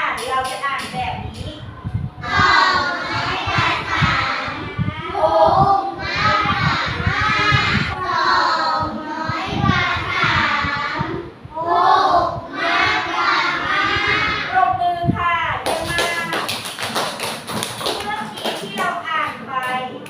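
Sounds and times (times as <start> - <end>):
children reading aloud in unison: 1.1 - 16.4.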